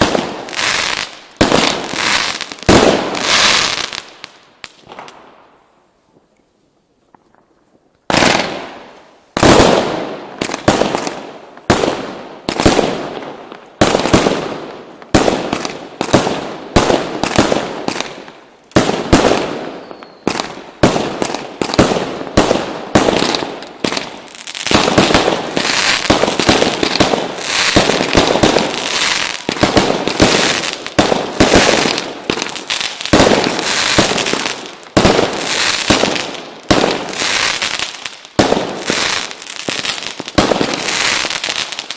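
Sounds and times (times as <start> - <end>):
fireworks bangs: 0.0 - 5.6, 8.1 - 41.9
fireworks crackling: 0.0 - 6.2, 7.2 - 41.9.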